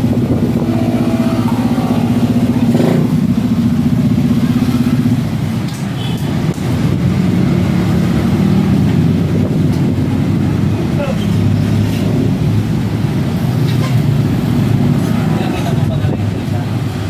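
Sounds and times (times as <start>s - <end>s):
scooter engine running: 0.0s - 5.7s.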